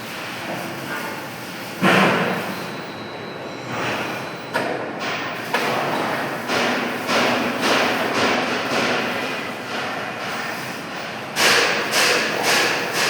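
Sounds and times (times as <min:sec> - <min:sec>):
machine noise: 0:11.4 - 0:13.0.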